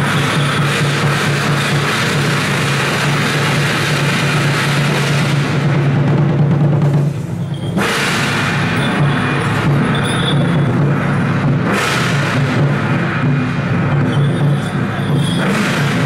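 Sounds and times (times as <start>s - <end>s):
cymbals: 0.0s - 16.0s
procession drums: 0.0s - 16.0s.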